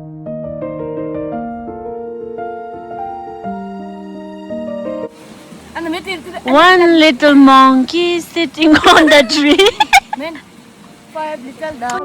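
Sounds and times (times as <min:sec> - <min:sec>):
gentle piano music: 0:00.0 - 0:09.4.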